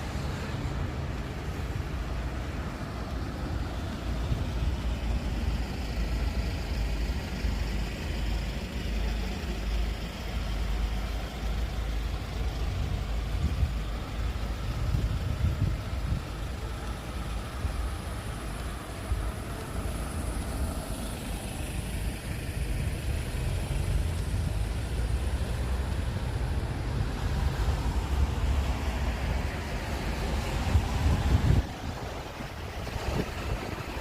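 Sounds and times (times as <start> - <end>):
passing tyre noise: 0.0 - 34.0
vehicle engine rumbling: 0.0 - 34.0.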